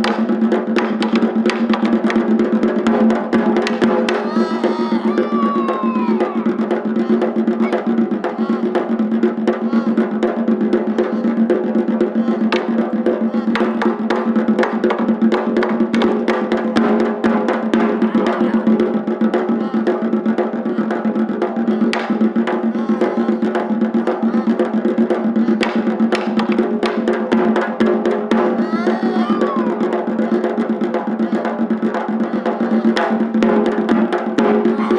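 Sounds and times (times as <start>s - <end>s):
steady deep drum tone: 0.0s - 34.9s
rapid stick strikes on drums: 21.4s - 29.3s.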